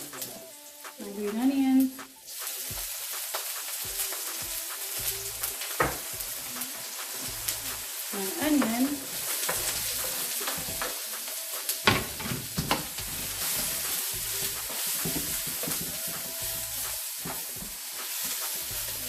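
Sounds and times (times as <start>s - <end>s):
vegetables sizzling in hot oil: 0.0s - 19.0s.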